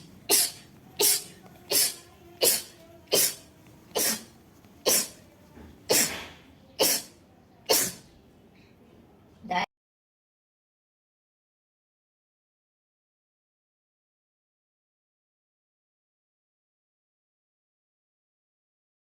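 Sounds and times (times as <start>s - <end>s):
woman sneezing: 0.3s - 5.2s, 5.9s - 8.1s.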